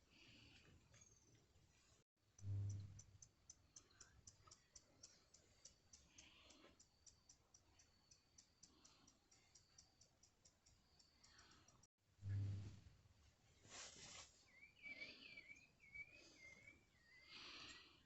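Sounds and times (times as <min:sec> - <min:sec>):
faint high-pitched clicking: 0:02.3 - 0:12.6.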